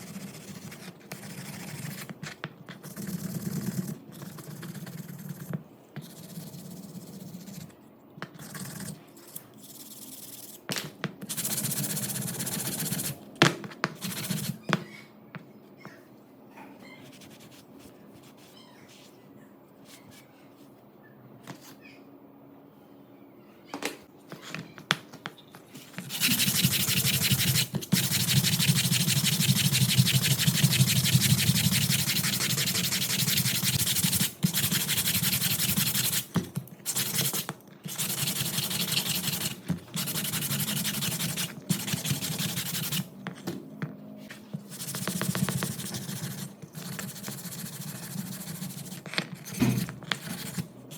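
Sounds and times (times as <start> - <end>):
sanding: 26.1 - 36.3, 36.9 - 43.1, 44.7 - 49.0.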